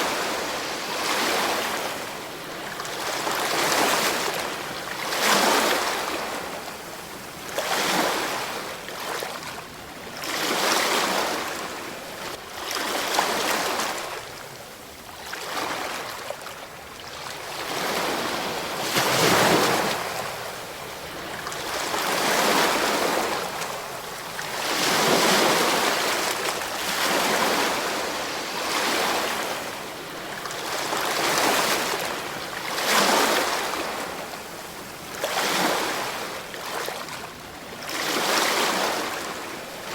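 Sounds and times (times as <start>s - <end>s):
ocean waves breaking: 0.0s - 6.6s, 17.6s - 37.1s.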